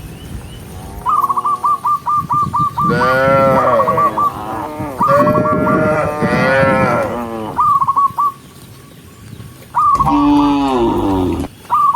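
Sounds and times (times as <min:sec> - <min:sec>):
cattle mooing: 0:02.8 - 0:07.7, 0:10.0 - 0:11.5.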